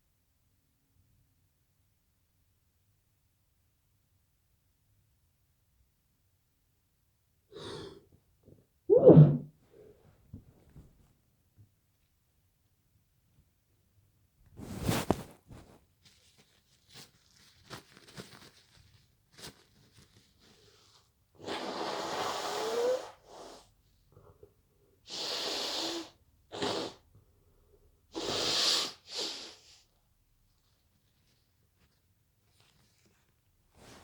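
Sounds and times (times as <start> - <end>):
person sneezing: 8.9 - 9.5
small clicks and rustles: 14.4 - 20.6, 30.5 - 34.0.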